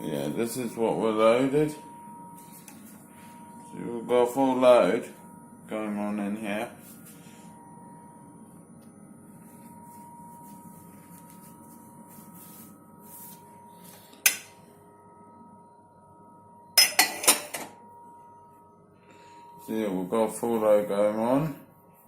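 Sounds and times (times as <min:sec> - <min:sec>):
dishes and glassware clinking: 0:16.8 - 0:17.8.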